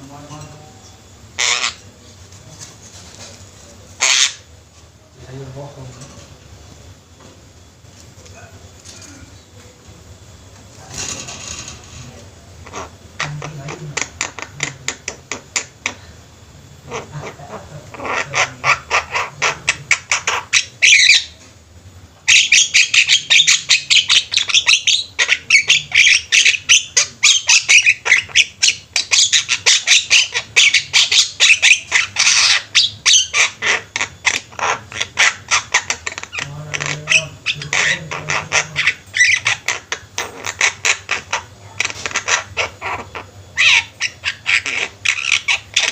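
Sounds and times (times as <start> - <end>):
mynas harsh chattering: 16.8 - 21.4, 22.3 - 45.9.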